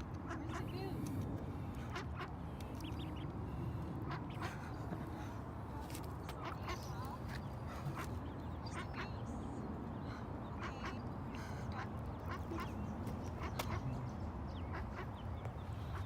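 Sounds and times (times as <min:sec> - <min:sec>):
ducks quacking: 0:00.0 - 0:01.1, 0:01.7 - 0:05.0, 0:06.3 - 0:09.3, 0:10.5 - 0:15.2.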